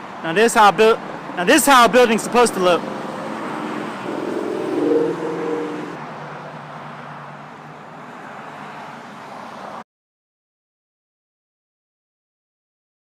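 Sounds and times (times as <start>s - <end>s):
outdoor traffic noise: 0.0s - 9.9s
motor vehicle passing by: 2.2s - 9.8s.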